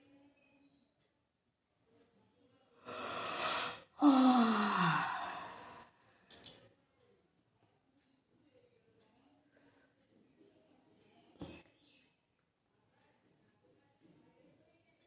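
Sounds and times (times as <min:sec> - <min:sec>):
person yawning: 0:02.9 - 0:05.8.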